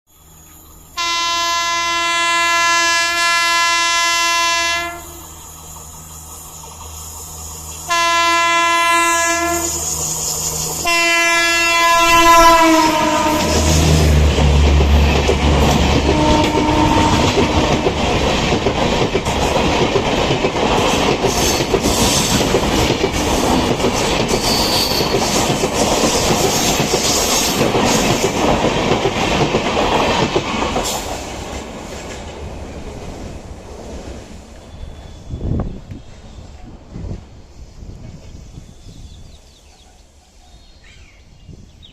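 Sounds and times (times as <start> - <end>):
deep locomotive rumble: 0.2 - 41.8
locomotive horn blasts: 1.0 - 5.3, 7.9 - 9.9, 10.8 - 14.3, 15.8 - 18.0
train wheels clacking over rail joints: 5.0 - 33.4.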